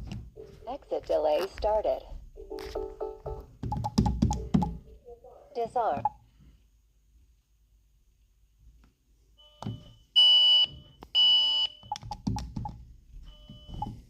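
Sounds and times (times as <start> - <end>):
high-pitched alarm beeps: 9.4 - 12.0.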